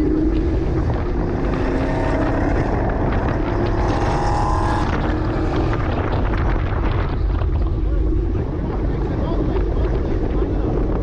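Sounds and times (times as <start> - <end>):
road noise: 0.0 - 11.0
sports car engine pulling hard: 0.0 - 11.0
wind noise: 0.0 - 11.0.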